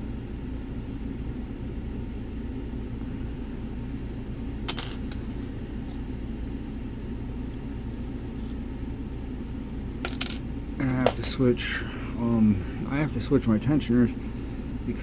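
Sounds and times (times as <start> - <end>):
low background rumble: 0.0 - 15.0
lockpicking tools clinking: 10.0 - 11.4.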